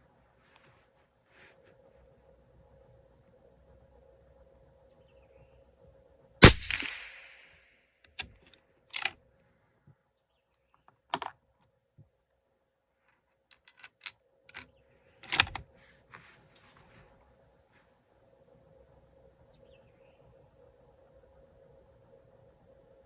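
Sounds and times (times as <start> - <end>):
rifle bolt clicks and clunks: 6.4 - 7.2, 11.1 - 11.3, 15.2 - 15.6
suppressed rifle shot: 6.4 - 7.4.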